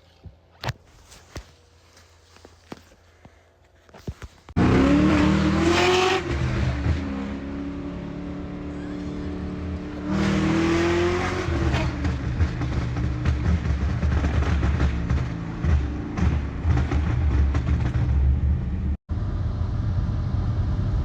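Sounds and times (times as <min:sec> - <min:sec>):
car engine accelerating: 0:04.6 - 0:21.0.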